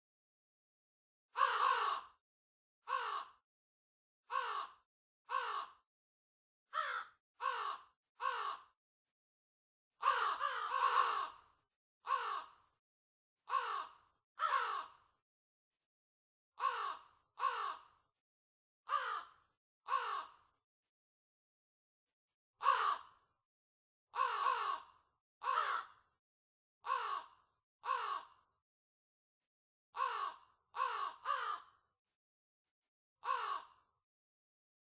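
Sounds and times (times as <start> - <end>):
crows cawing: 1.4 - 2.2, 2.9 - 3.4, 4.3 - 5.8, 6.8 - 8.7, 10.0 - 11.4, 12.1 - 12.6, 13.5 - 15.0, 16.6 - 17.9, 18.9 - 20.4, 22.6 - 23.2, 24.2 - 26.0, 26.9 - 28.4, 30.0 - 31.8, 33.2 - 33.8.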